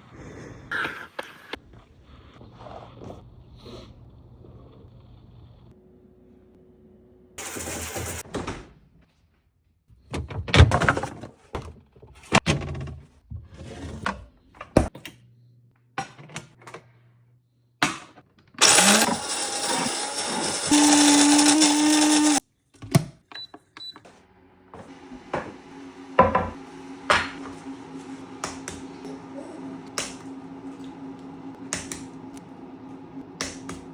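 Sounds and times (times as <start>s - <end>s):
kitchen appliance motor running: 7.4s - 8.2s, 18.6s - 22.4s
kitchen clattering and knocks: 26.2s - 27.4s.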